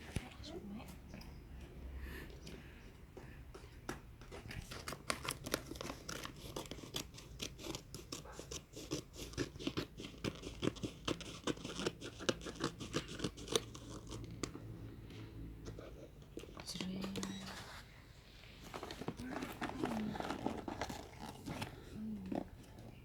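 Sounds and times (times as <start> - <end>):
sharp snaps and scratches: 3.9 - 14.8, 18.6 - 23.0
wrapping paper tearing: 4.7 - 14.4, 18.6 - 21.8.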